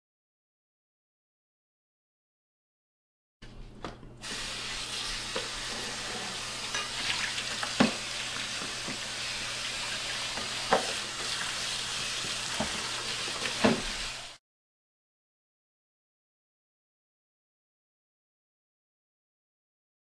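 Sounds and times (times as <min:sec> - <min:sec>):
food frying sizzle: 0:04.2 - 0:14.4.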